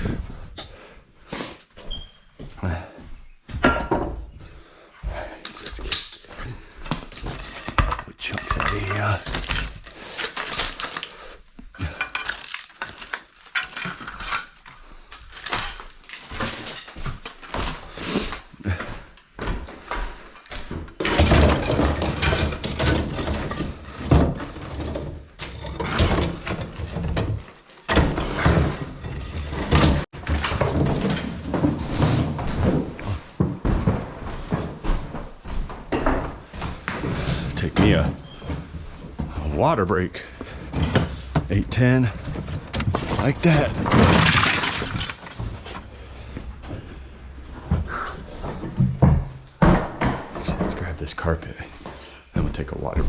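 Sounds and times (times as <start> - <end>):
plaster chunks thudding and clattering: 5.4 - 17.9, 18.8 - 34.7, 40.4 - 45.8, 47.7 - 51.0.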